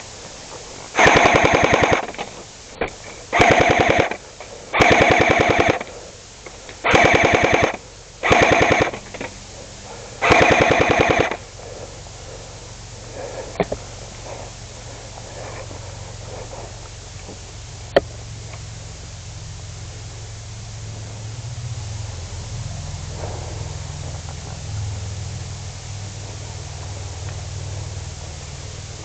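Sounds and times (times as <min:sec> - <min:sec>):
airsoft gun full-auto bursts: 0:01.0 - 0:02.3, 0:03.3 - 0:06.0, 0:06.8 - 0:09.3, 0:10.2 - 0:11.6.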